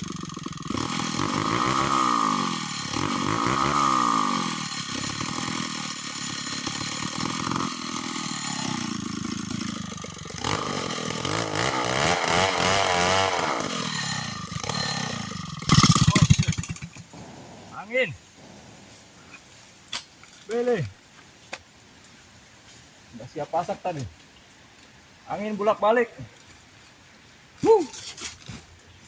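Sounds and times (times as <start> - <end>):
chainsaw cutting wood: 0.0 - 17.6.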